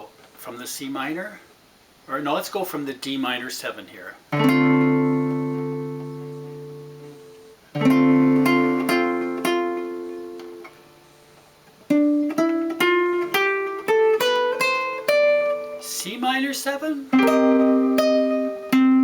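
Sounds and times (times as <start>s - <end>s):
guitar chords and notes: 4.3s - 19.0s.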